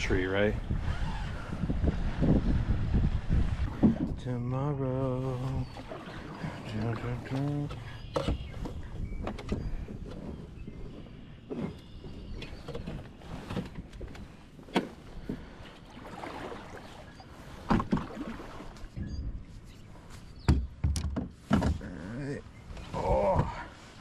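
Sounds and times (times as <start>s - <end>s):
wind rumbling on microphone: 0.0s - 23.7s
knocks against kayak hull: 17.7s - 18.2s, 20.4s - 21.8s.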